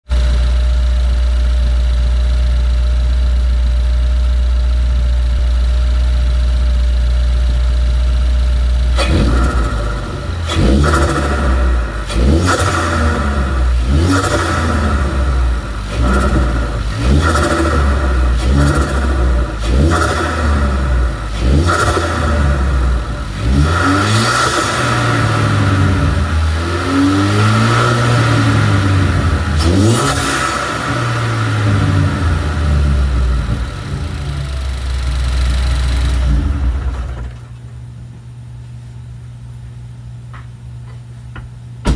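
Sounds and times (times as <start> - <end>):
car engine revving: 8.8 - 37.4.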